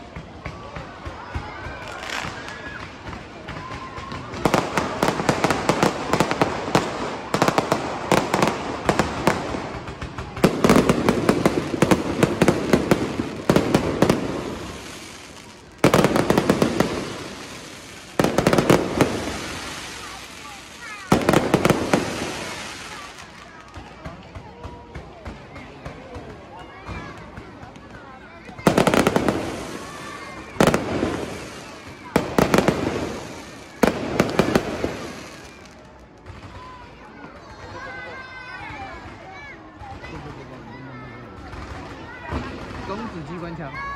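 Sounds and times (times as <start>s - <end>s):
fireworks bursting with bangs: 0.0s - 40.4s, 41.2s - 43.9s
fireworks crackling: 0.0s - 43.9s.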